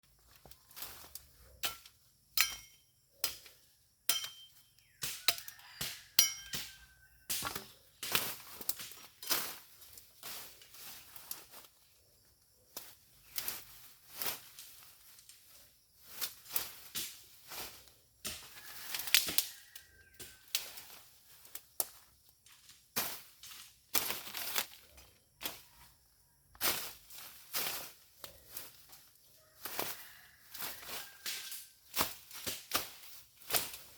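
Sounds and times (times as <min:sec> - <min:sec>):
wood cracking and chopping: 0:05.0 - 0:09.2.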